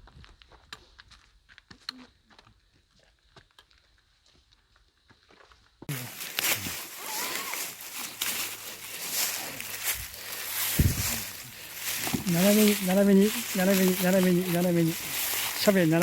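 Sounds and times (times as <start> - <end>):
faint footsteps: 0.0 - 16.0
rustling and crunching: 5.9 - 16.0.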